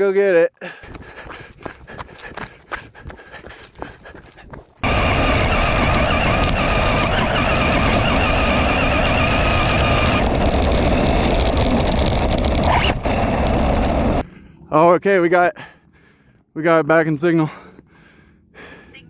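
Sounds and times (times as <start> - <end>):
vehicle engine and road noise: 0.8 - 14.7.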